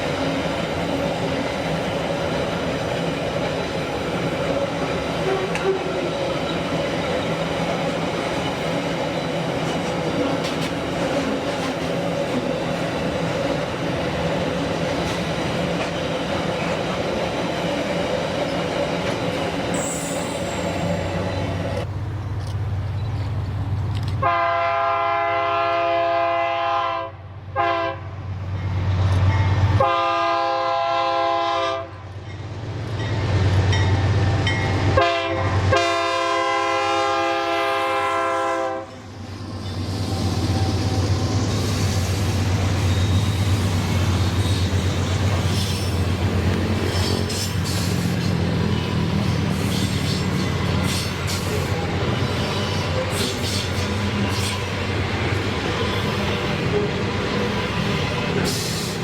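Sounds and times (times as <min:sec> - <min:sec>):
freight train rolling on rails: 0:00.0 - 0:59.0
locomotive multi-tone air horn: 0:24.2 - 0:28.1, 0:29.8 - 0:32.0, 0:34.9 - 0:39.0.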